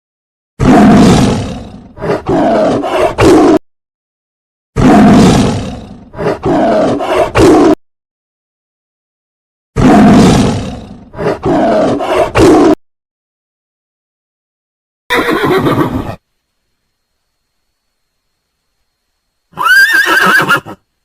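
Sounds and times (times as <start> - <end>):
lion roaring: 0.6 - 3.6, 4.8 - 7.8, 9.8 - 12.8.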